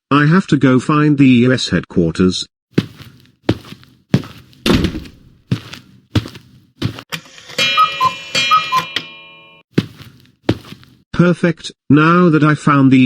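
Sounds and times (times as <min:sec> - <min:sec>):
cartoon footstep knocks: 0:02.8 - 0:07.0.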